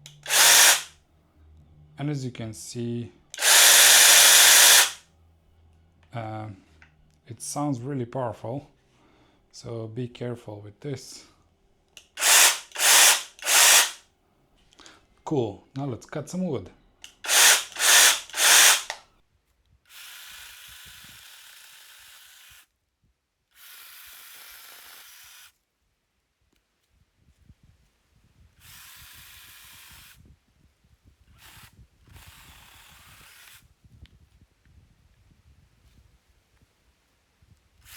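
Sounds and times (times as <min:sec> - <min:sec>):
mini chainsaw running: 0:00.0 - 0:00.9, 0:03.4 - 0:05.0, 0:12.0 - 0:14.0, 0:17.1 - 0:19.0, 0:21.2 - 0:22.5.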